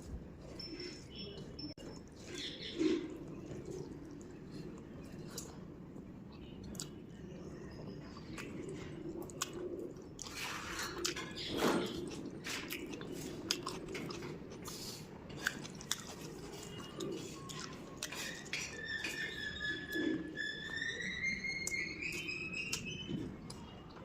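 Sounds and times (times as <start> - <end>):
person chewing food: 8.2 - 19.3
food crunching: 8.2 - 19.4.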